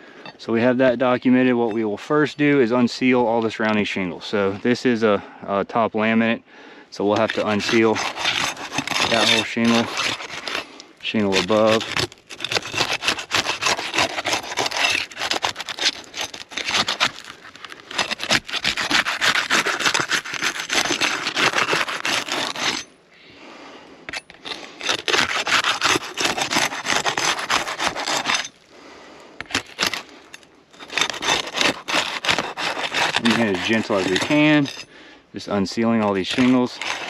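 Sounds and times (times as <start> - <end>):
tool scraping under shingles: 7.0 - 23.0, 24.0 - 37.0.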